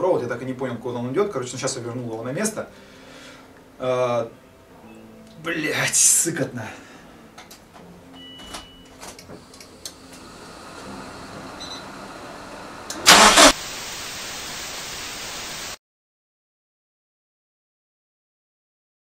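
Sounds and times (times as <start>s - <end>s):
steady hiss: 9.4s - 15.8s
short beep: 11.6s - 11.9s
ignition clicks: 12.8s - 13.6s
loud burst: 13.0s - 15.8s.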